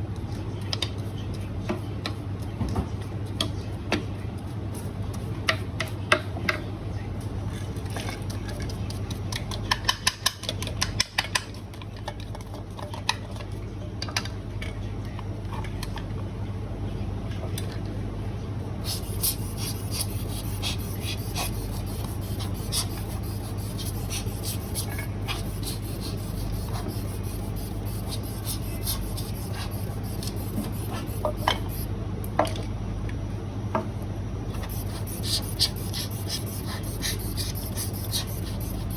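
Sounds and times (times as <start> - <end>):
low steady hum: 11.6 - 38.9.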